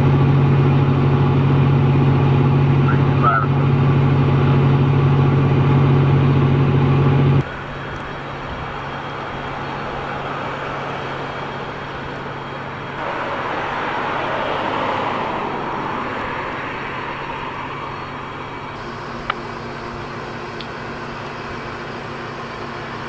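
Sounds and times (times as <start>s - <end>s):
road traffic noise: 0.0s - 23.0s
vehicle engine idling: 0.0s - 23.0s
vehicle passing: 8.3s - 18.9s.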